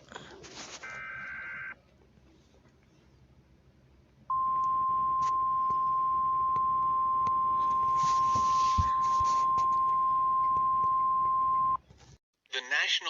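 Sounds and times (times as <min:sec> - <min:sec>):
faint radio hiss and crackle: 0:00.0 - 0:03.3, 0:07.4 - 0:09.9
steady alarm tone: 0:04.3 - 0:11.8.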